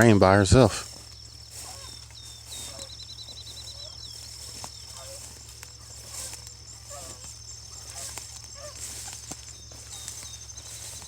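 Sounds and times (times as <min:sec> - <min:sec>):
hounds baying faintly: 0:00.4 - 0:11.0
small bird chirps: 0:00.8 - 0:11.0.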